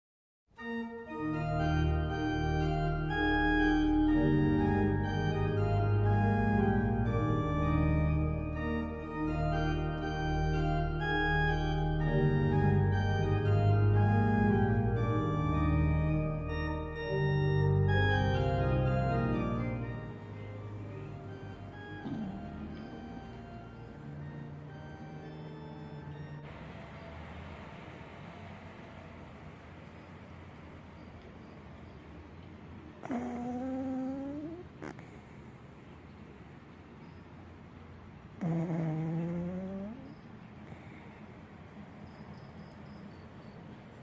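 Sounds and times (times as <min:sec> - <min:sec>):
organ music: 0:00.6 - 0:27.0.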